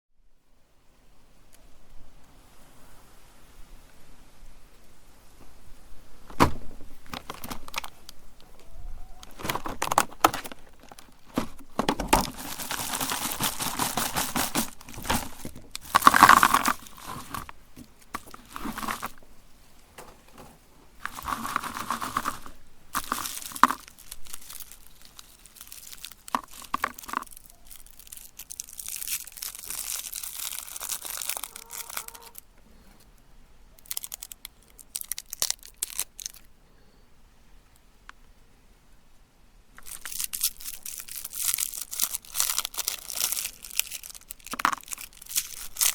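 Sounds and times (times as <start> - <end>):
plastic wrappers crinkling: 7.1 - 8.2, 9.1 - 19.2, 21.0 - 32.4, 33.8 - 36.5, 39.8 - 45.9.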